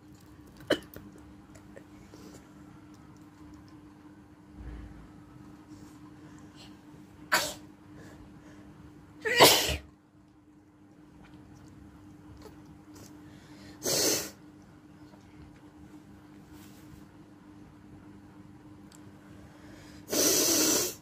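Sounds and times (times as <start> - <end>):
person sneezing: 7.3 - 7.7, 9.2 - 9.9, 13.8 - 14.4.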